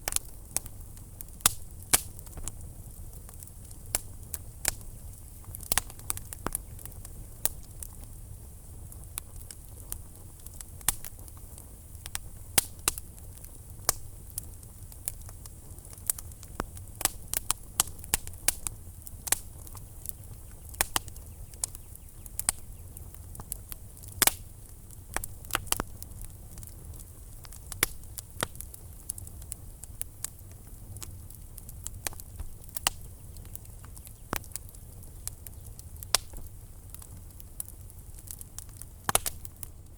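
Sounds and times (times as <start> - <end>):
fire crackling and popping: 0.0 - 39.9
fire rumbling in fireplace: 0.0 - 39.9.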